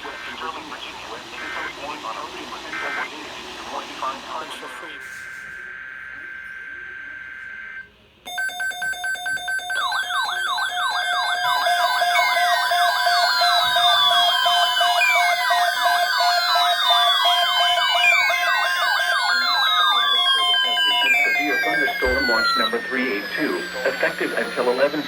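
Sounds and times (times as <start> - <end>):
fast warbling siren sweep: 9.8 - 25.0
pulsing electronic tone: 9.8 - 25.0
slow falling siren sweeps: 9.9 - 25.0.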